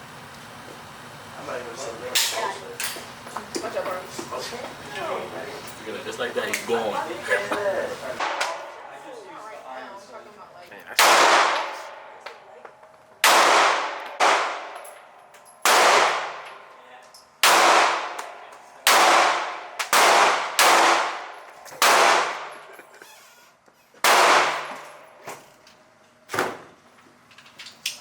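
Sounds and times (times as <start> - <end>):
gunshots with echo: 11.0 - 12.1, 13.2 - 14.8, 15.6 - 16.5, 17.4 - 22.7, 24.0 - 24.8.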